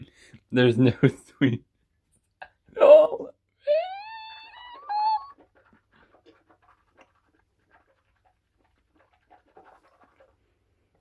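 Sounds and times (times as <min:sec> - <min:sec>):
person breathing: 0:00.0 - 0:00.4
mouth noises chewing: 0:04.0 - 0:10.4.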